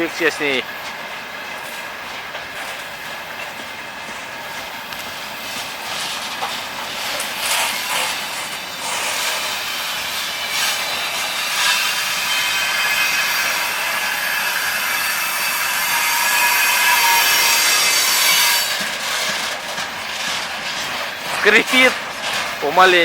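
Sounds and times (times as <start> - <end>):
train wheels rattling on rails: 0.0 - 23.0
wagon squeal and creak: 6.9 - 19.5.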